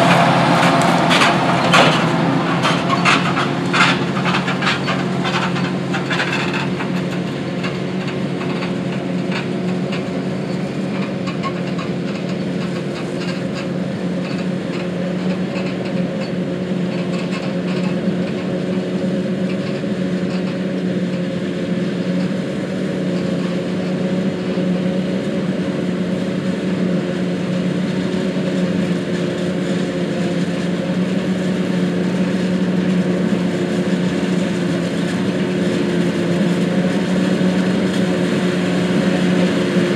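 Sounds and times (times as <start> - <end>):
rattling crackle: 0.0 - 10.1
diesel engines under load: 0.0 - 39.9.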